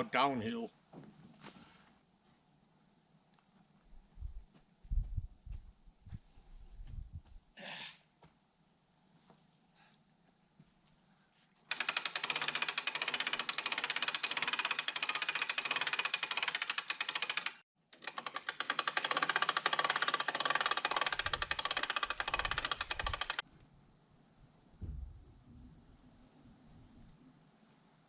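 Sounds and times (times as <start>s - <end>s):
power tool rattling drone: 11.7s - 23.4s.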